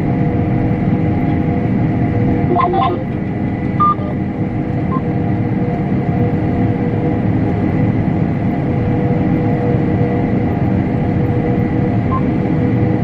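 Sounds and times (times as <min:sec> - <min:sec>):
combine harvester droning: 0:00.0 - 0:13.0
steady hum: 0:00.0 - 0:13.0.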